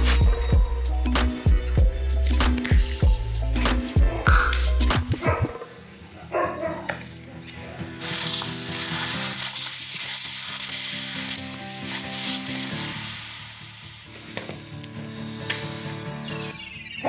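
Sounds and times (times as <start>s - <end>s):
background music: 0.0s - 7.3s
compressed air hissing: 8.0s - 14.3s.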